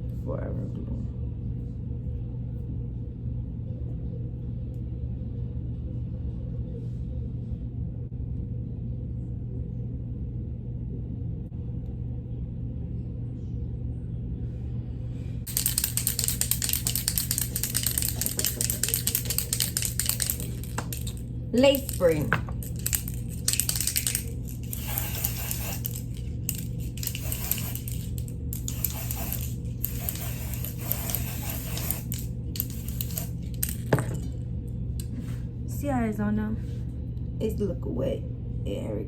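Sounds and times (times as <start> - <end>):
low hum: 0.0 - 39.0.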